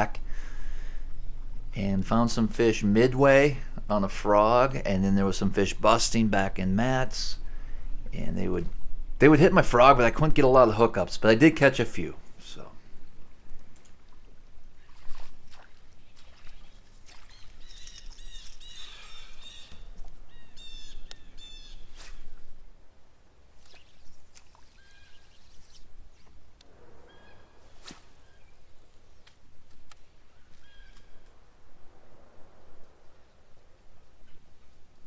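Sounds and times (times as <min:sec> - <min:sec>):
birds chirping: 0:15.9 - 0:22.6, 0:23.6 - 0:29.3, 0:30.1 - 0:31.4.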